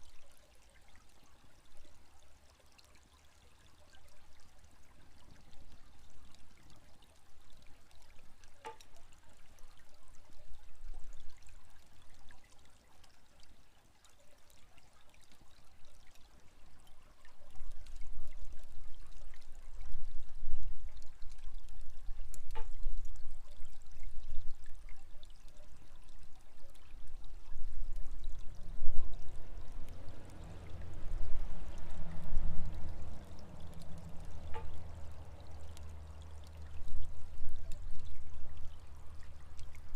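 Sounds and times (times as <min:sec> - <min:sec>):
water pouring: 0:00.0 - 0:39.9
bamboo fountain knocking: 0:08.5 - 0:09.1, 0:21.5 - 0:24.4, 0:26.4 - 0:39.9
low rumble: 0:27.6 - 0:39.1.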